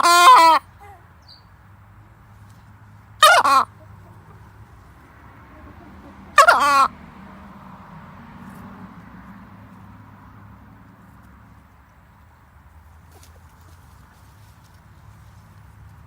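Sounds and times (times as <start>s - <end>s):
chicken making short calls: 0.0s - 1.0s, 3.2s - 4.6s, 5.5s - 6.9s.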